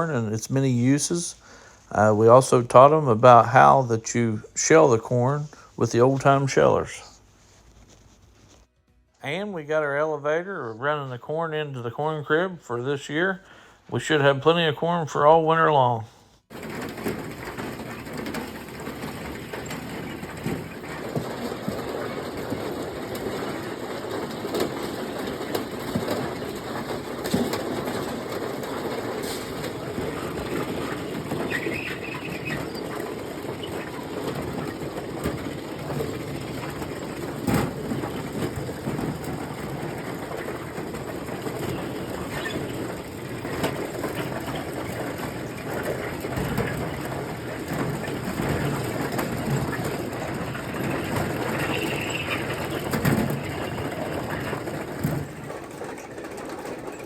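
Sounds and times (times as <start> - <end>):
farm elevator rattling: 16.5 - 57.0.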